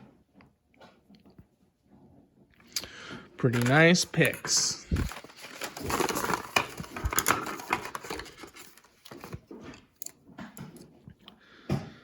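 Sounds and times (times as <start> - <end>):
packaging rustling: 2.8 - 9.8.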